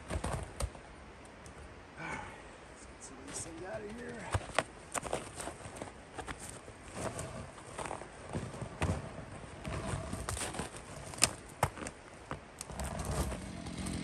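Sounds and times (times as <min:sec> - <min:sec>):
footsteps: 0:03.2 - 0:13.2.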